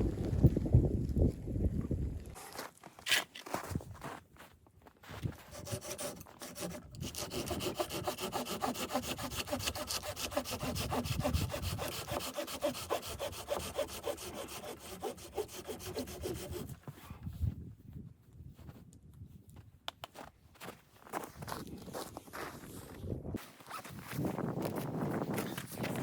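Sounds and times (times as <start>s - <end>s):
hand saw cutting wood: 5.4s - 16.8s.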